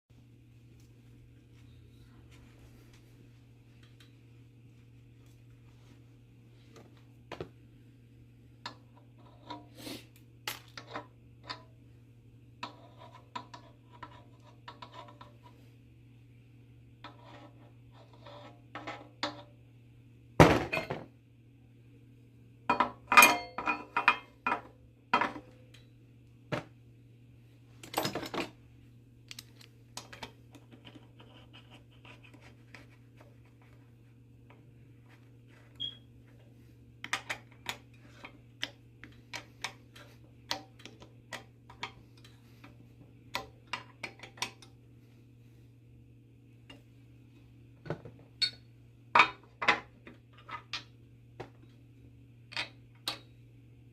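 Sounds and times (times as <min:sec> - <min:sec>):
metal tools clinking and knocking: 0:27.8 - 0:28.6, 0:48.4 - 0:48.6.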